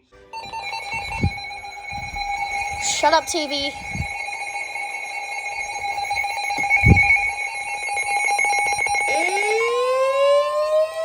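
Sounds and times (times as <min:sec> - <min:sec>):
rising siren wail: 0:07.3 - 0:11.0.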